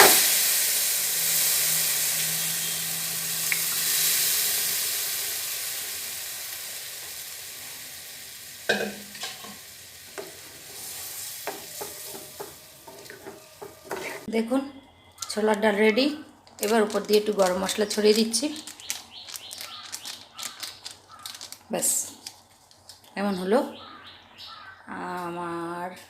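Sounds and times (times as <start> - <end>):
food sizzling in hot oil: 0.0 - 14.3, 16.6 - 22.4.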